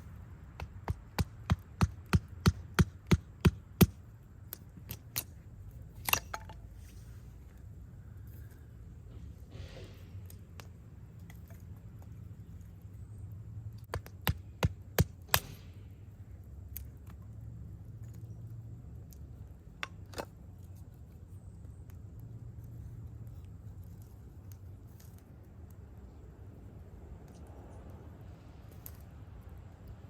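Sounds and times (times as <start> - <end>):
low steady rumble: 0.0 - 30.0
sharp cracks: 13.8 - 16.0.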